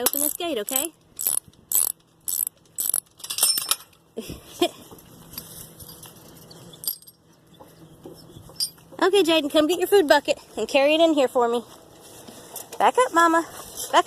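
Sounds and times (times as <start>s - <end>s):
metal gate lock rattling: 0.0s - 4.0s.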